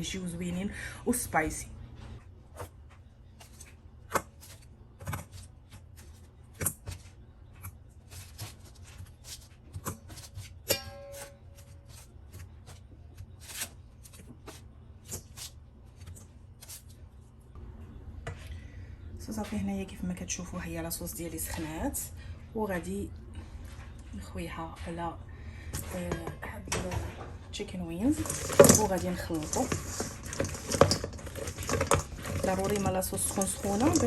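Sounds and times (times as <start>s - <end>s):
utensils clicking against cookware: 28.2s - 34.0s.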